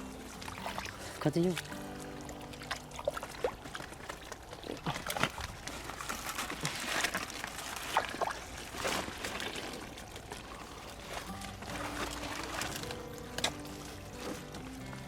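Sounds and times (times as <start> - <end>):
water sloshing and splashing: 0.0 - 15.0.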